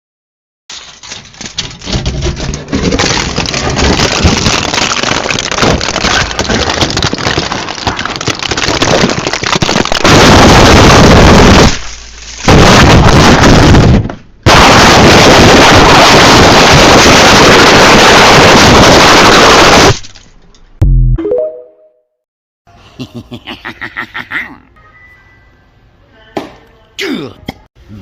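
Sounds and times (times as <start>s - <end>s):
harsh distorted crackling noise: 0.7s - 20.2s.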